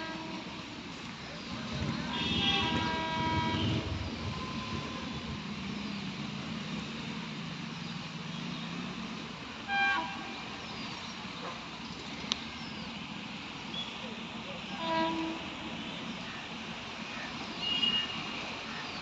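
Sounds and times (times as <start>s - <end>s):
train wheels rumbling and rattling: 0.0s - 12.2s
short train horn toot: 2.1s - 5.2s, 9.7s - 10.4s, 14.7s - 15.5s, 17.6s - 18.3s.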